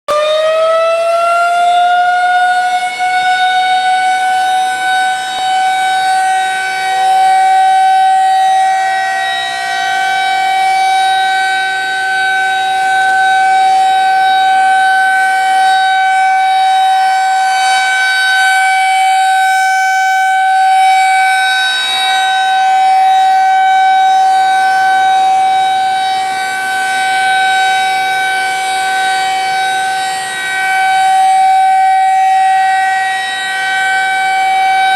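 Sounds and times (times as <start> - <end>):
outdoor warning siren: 0.1 - 34.9.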